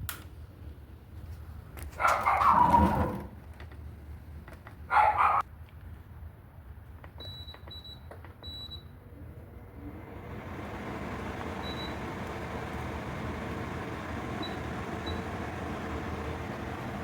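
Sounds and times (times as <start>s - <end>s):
high control panel beeps: 7.2s - 8.9s, 11.6s - 12.0s
air conditioner fan rushing air: 9.0s - 17.0s.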